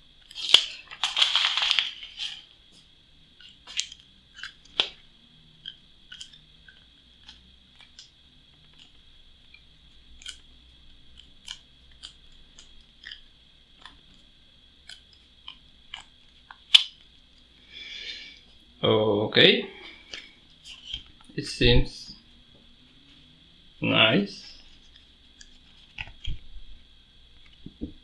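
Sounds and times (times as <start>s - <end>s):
cardboard and packaging rustling: 0.3s - 2.5s.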